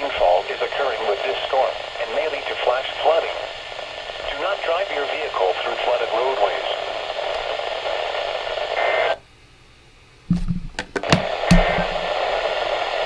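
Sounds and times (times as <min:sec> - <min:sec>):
radio static hiss: 0:00.0 - 0:09.3, 0:10.2 - 0:13.0
sharp clicks and knocks: 0:10.3 - 0:12.0.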